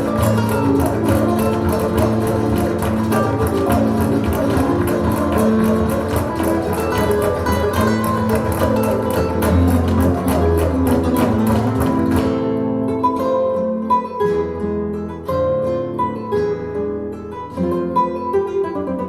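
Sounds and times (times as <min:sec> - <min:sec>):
sharp percussive strikes: 0:00.0 - 0:12.7
plucked acoustic guitar: 0:00.0 - 0:19.0.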